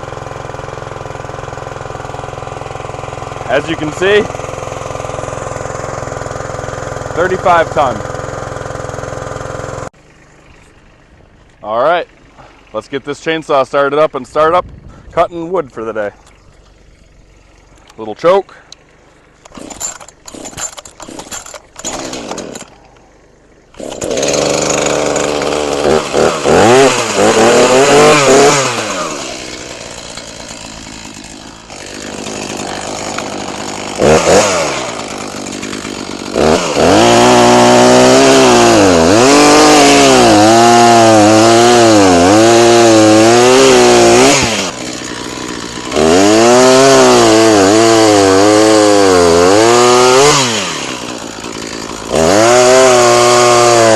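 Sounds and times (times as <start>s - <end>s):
chainsaw cutting logs: 0.0s - 10.0s, 15.6s - 53.9s
chainsaw engine revving: 0.0s - 10.5s, 15.7s - 53.9s
starter cord pulls: 19.4s - 23.0s, 23.7s - 37.3s.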